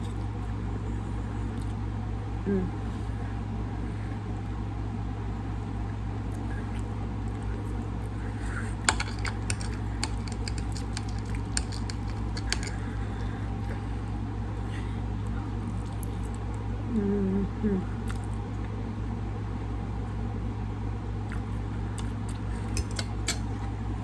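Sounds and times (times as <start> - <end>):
steady low hum: 0.0 - 24.0
utensil clicks and chewing: 1.4 - 1.8, 6.3 - 16.7, 18.0 - 18.8, 21.2 - 23.7.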